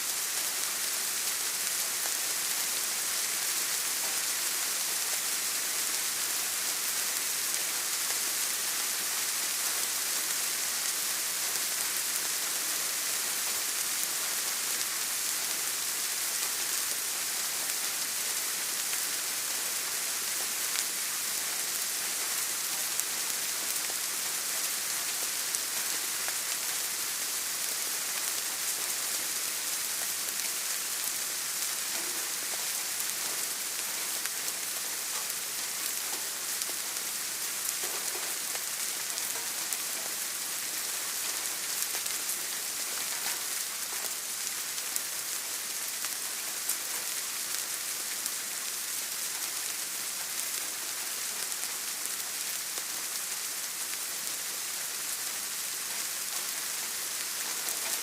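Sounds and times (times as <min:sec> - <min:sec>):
rain pattering: 0:00.0 - 0:58.0.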